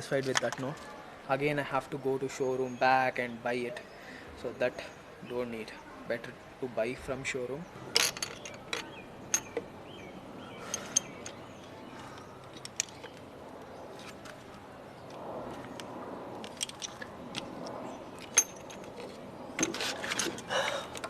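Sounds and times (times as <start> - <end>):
hand tools clinking: 7.9 - 9.6, 16.4 - 17.5, 18.2 - 21.0.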